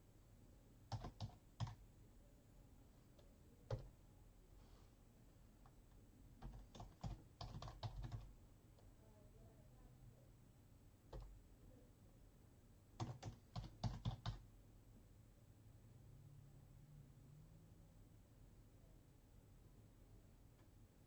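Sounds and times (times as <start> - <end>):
typing on keyboard: 0.9 - 1.8, 3.7 - 3.9, 6.4 - 8.3, 11.1 - 11.4, 13.0 - 14.4.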